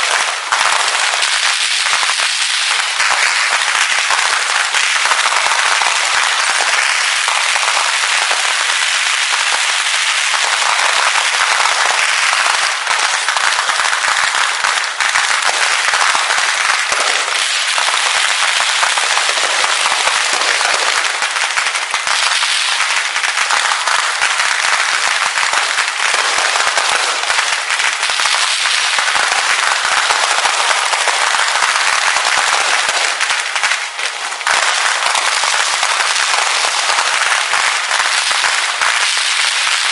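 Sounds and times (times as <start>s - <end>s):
fireworks crackling and popping: 0.0s - 39.9s.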